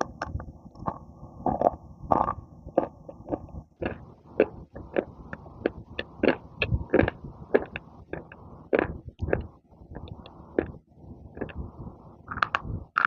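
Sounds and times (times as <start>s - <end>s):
crunchy chewing: 0.9s - 10.8s, 11.4s - 11.6s.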